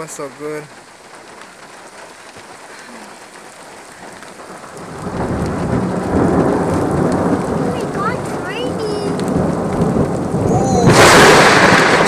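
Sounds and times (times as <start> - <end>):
rain hissing: 0.0 - 12.0
thunder rumbling: 3.9 - 12.0.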